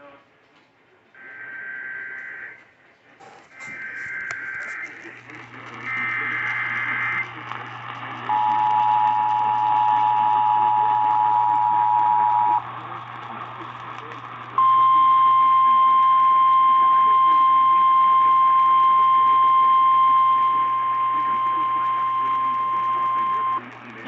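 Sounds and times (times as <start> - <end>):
low radio hum: 0.0 - 24.0
radio hiss: 3.2 - 24.0
steady warning alarm tone: 3.5 - 12.7, 14.6 - 23.7.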